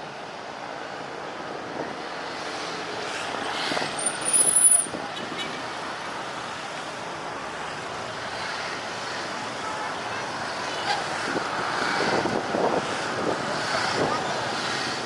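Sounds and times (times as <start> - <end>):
wind buffeting microphone: 11.3 - 14.3.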